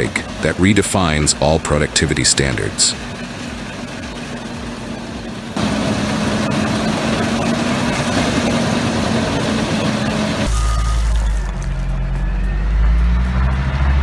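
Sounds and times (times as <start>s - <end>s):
heavy machine engine humming: 0.0s - 14.0s.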